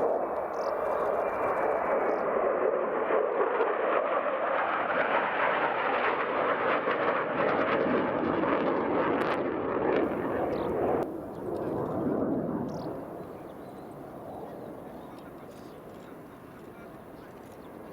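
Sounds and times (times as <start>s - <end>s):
jet engine in flight: 0.0s - 17.9s.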